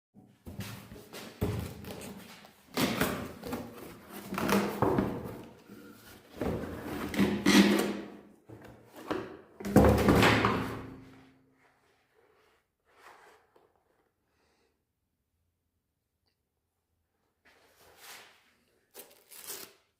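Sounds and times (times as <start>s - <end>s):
objects knocking and thudding: 2.7s - 11.2s.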